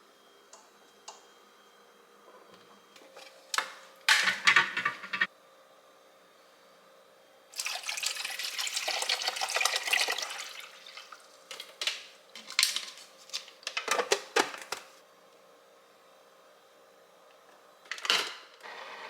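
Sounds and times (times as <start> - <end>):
tap water running into container: 7.5 - 12.0.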